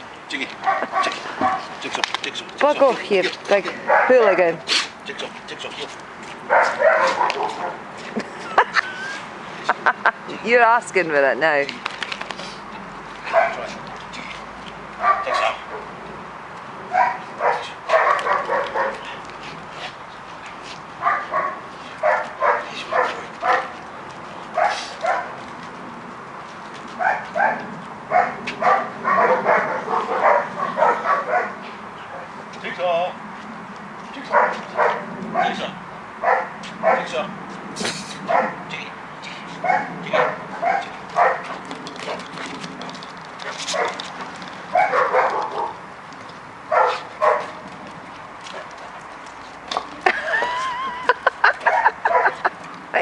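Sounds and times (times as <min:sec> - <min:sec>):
dog barking: 0:00.6 - 0:01.7, 0:03.8 - 0:04.4, 0:06.5 - 0:07.8, 0:13.3 - 0:13.7, 0:15.0 - 0:15.9, 0:16.9 - 0:19.2, 0:21.0 - 0:23.8, 0:24.6 - 0:25.4, 0:27.0 - 0:31.6, 0:34.2 - 0:37.2, 0:38.3 - 0:38.6, 0:39.6 - 0:41.6, 0:43.7 - 0:44.0, 0:44.7 - 0:45.8, 0:46.7 - 0:47.6, 0:51.6 - 0:52.5.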